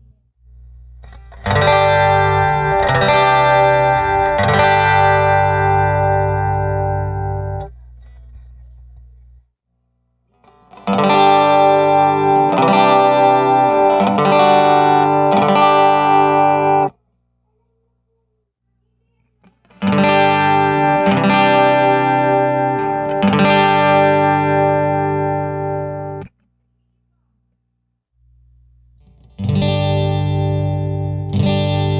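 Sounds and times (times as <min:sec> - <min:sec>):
acoustic guitar chords: 0:00.5 - 0:07.8, 0:10.6 - 0:16.9, 0:19.6 - 0:26.3, 0:29.0 - 0:31.9.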